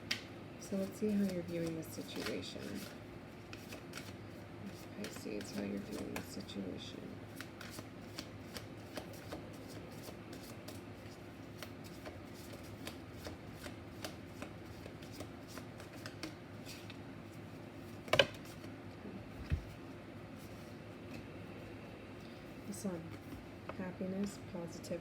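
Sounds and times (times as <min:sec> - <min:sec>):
cards being shuffled: 0:00.8 - 0:06.6, 0:07.3 - 0:18.7.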